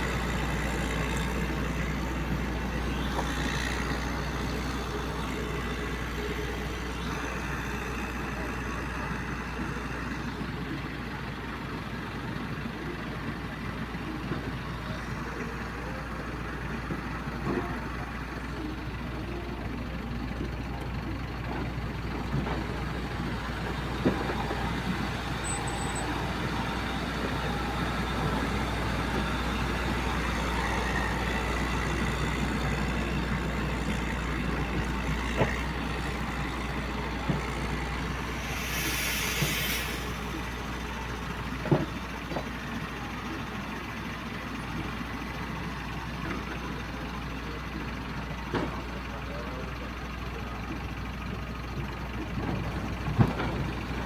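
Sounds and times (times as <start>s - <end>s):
diesel engines running: 0.0s - 54.0s
knocks and clanks: 20.3s - 38.3s, 41.4s - 42.8s, 48.4s - 49.0s, 51.8s - 54.0s
hiss of air: 38.3s - 40.5s.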